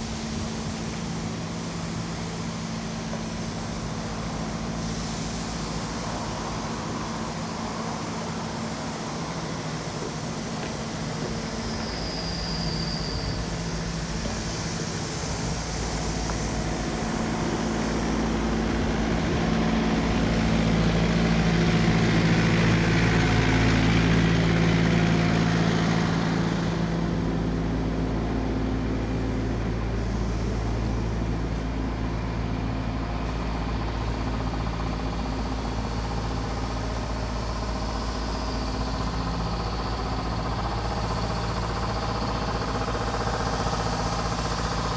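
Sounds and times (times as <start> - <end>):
vehicle engine running: 0.0 - 44.9.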